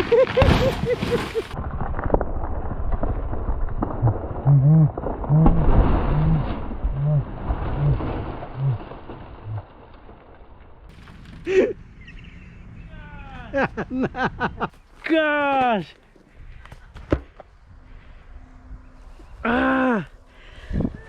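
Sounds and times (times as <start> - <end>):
tree crashing onto a car: 0.0 - 11.6
tree cracking: 0.0 - 11.9.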